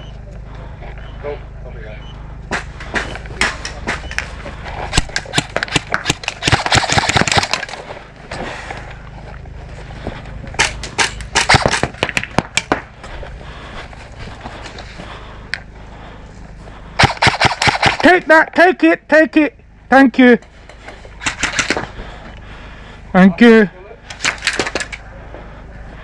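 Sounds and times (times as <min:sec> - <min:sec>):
airsoft guns firing: 0:02.5 - 0:04.3, 0:04.9 - 0:07.8, 0:10.6 - 0:12.9, 0:17.0 - 0:18.2, 0:21.2 - 0:21.9, 0:24.1 - 0:25.0.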